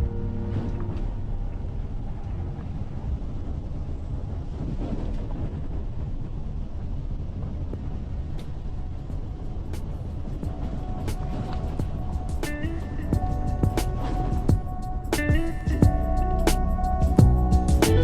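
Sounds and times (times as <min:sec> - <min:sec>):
car road and wind rumble: 0:00.0 - 0:18.0
held music notes: 0:10.4 - 0:18.0.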